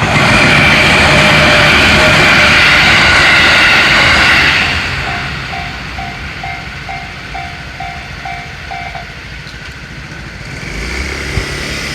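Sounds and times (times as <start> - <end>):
passing train rumble: 0.0 - 11.9
railroad crossing bell ringing: 1.8 - 9.6.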